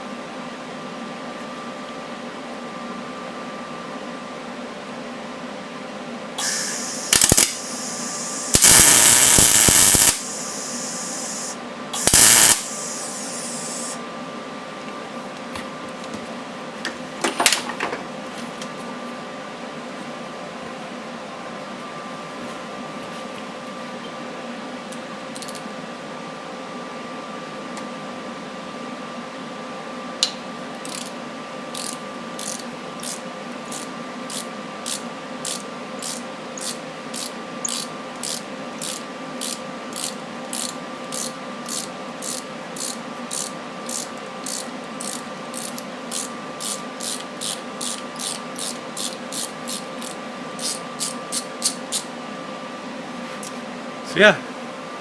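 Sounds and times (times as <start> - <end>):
ratchet wrench clicking: 6.4 - 14.0, 31.8 - 52.0
fan humming: 6.4 - 14.2.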